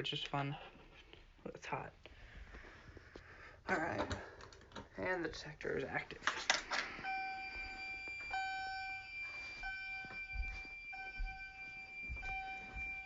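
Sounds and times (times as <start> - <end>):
steady high electronic tone: 7.0 - 13.0.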